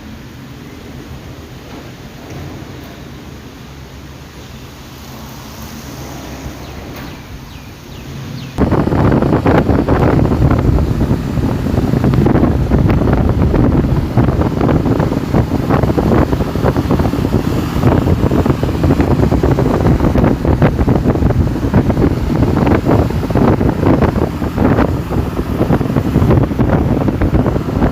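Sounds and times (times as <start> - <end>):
wind buffeting microphone: 5.9 - 27.9.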